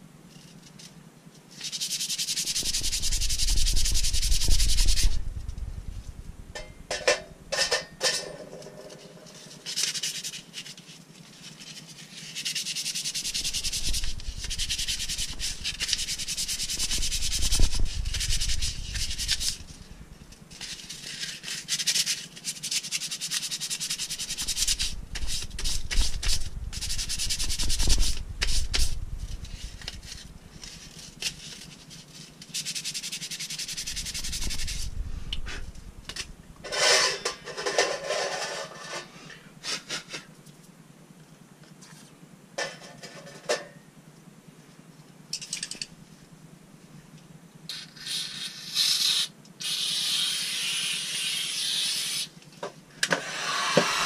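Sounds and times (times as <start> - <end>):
sandpaper rasping on metal part: 1.6 - 5.2, 11.7 - 19.6, 20.6 - 29.0, 30.0 - 34.9, 47.7 - 52.3.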